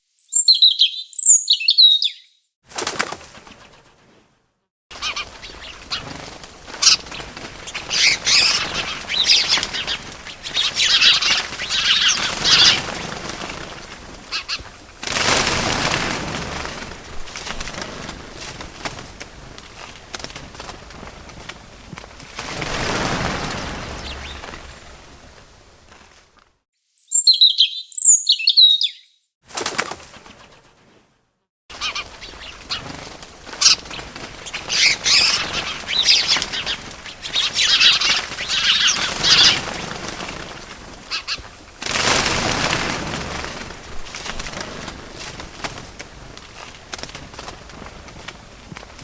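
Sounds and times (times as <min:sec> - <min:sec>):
short high bird chirps: 0:00.0 - 0:02.5, 0:26.8 - 0:29.3
bird wings flapping: 0:02.6 - 0:26.6, 0:29.5 - 0:49.0.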